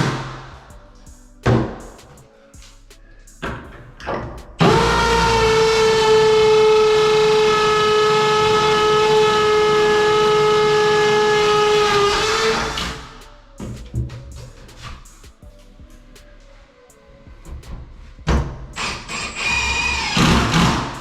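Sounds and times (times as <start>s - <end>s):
long horn blast: 4.6s - 13.2s.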